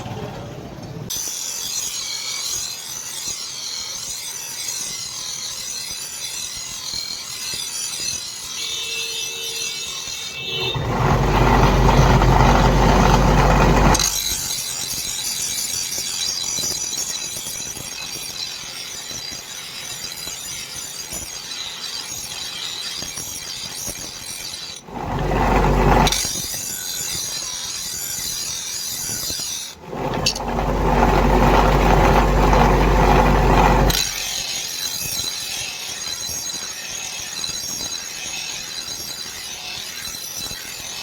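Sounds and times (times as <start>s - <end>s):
deep rushing noise: 10.6s - 14.1s.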